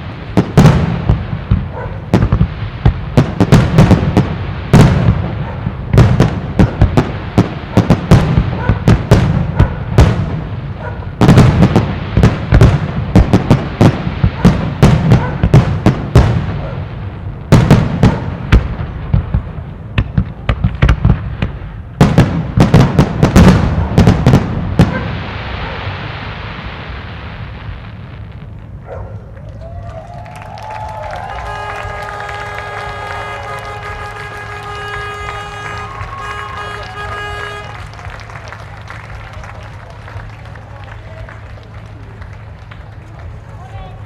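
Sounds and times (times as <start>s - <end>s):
fireworks bursting: 0.0s - 44.0s
steady hiss: 24.4s - 28.9s.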